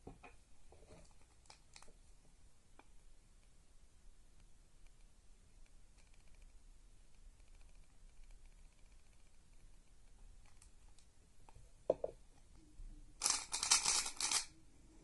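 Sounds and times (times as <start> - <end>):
puzzle cube clicking and rattling: 13.2 - 14.5.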